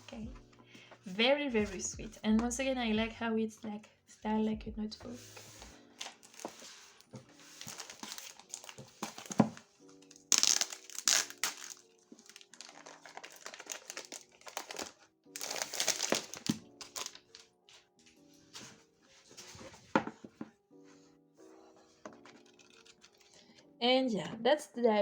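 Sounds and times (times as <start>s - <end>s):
soft lo-fi background music: 0.0s - 25.0s
packaging crinkling and rustling: 5.8s - 17.9s, 22.2s - 23.4s.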